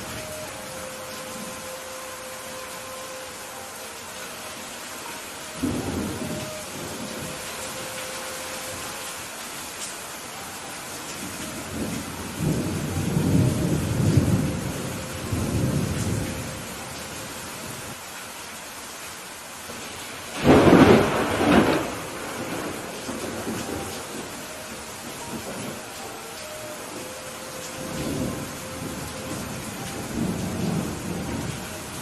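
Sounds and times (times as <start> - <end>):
steady rain: 0.0 - 32.0
thunder rumbling: 5.0 - 9.2, 11.2 - 17.8, 19.7 - 32.0
thunder clap: 20.4 - 24.3.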